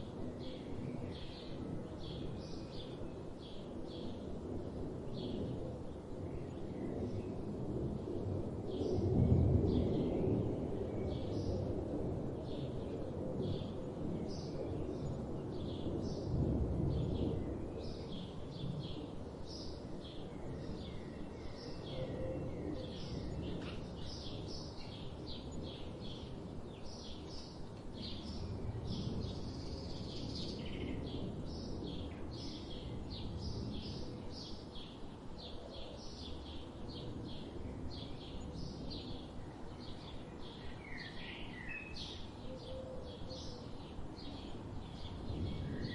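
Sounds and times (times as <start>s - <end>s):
songbirds chirping and singing: 17.0s - 45.9s.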